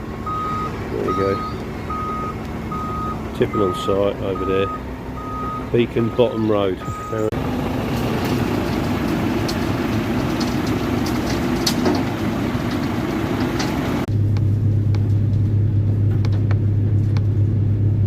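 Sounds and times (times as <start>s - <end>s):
road planer grinding: 0.0s - 14.1s
deep engine drone: 0.0s - 18.0s.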